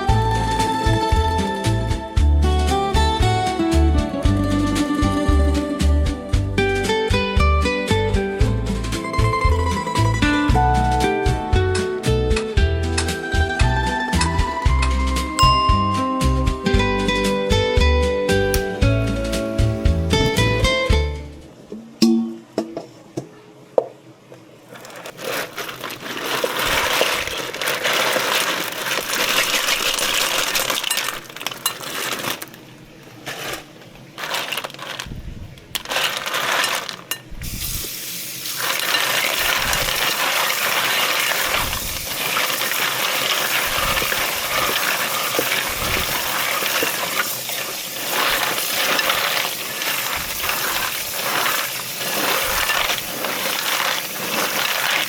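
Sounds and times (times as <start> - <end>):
clam shells clinking in water: 24.7 - 35.2, 35.8 - 37.3, 38.4 - 55.0.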